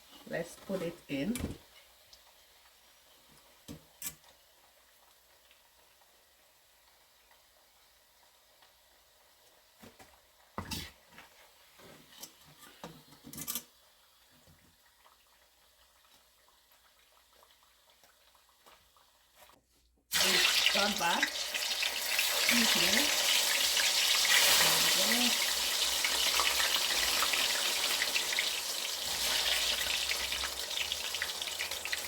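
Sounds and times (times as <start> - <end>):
kitchen utensils and dishes clattering: 11.8 - 13.7.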